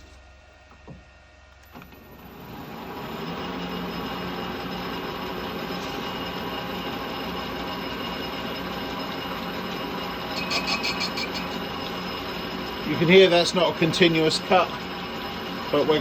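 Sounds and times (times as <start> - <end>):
metal lathe cutting with ringing rasp: 2.1 - 16.0.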